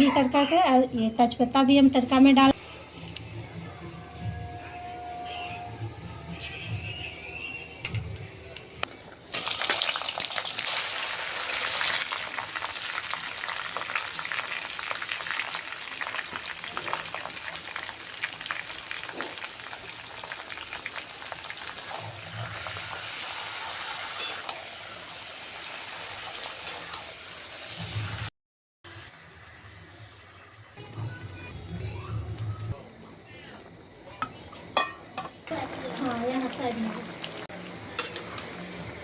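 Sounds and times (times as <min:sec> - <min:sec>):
food sizzling in hot oil: 0:09.3 - 0:28.3, 0:35.5 - 0:39.0.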